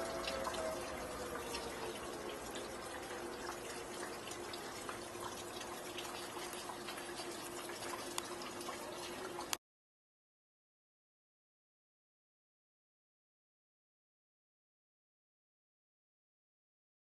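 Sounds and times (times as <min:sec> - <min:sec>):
warning siren sliding down: 0:00.0 - 0:04.0
warning siren steady note: 0:00.0 - 0:04.0
raindrops ticking: 0:00.0 - 0:09.6
steady rain: 0:00.0 - 0:09.6.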